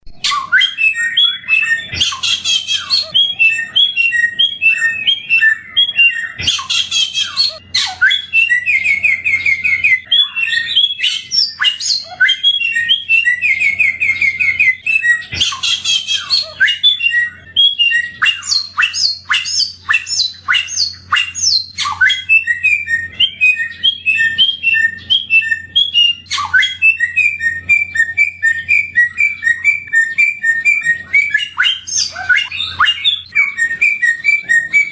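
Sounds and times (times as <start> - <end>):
songbird singing: 0.1 - 34.9.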